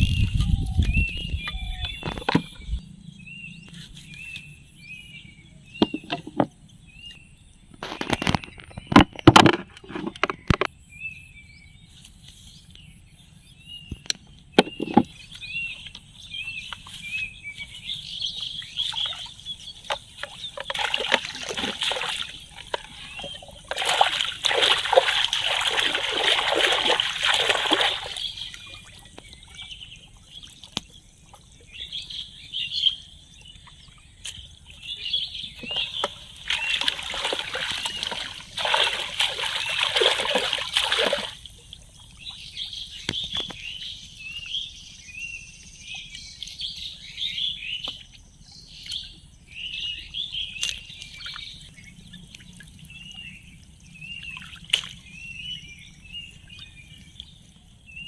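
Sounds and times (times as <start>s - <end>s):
birds chirping: 0.0s - 58.0s
water splashing: 16.6s - 32.0s, 33.7s - 43.8s, 50.6s - 58.0s.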